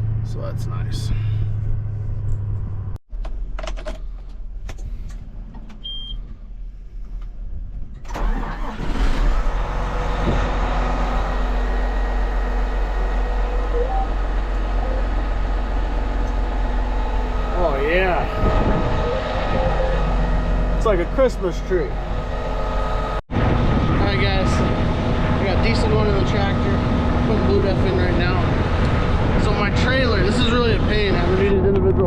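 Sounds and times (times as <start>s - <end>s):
motor running with low hum: 10.2s - 23.2s.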